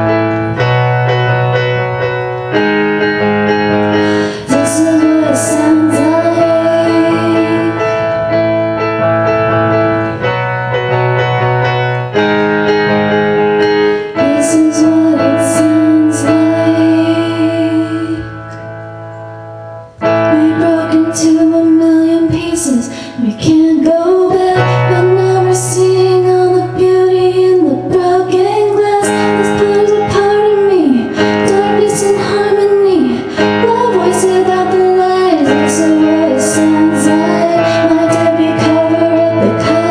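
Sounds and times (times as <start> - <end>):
piano guitar and drums: 0.0 - 39.9
women singing pop song: 4.2 - 8.1, 20.3 - 39.9.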